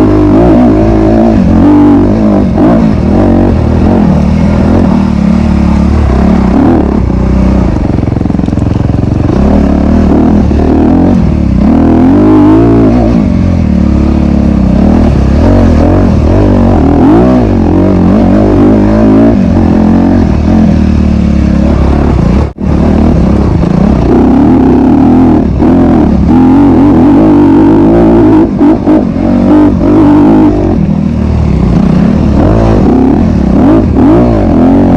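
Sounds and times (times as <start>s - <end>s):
dirt bike engine revving: 0.0s - 34.9s.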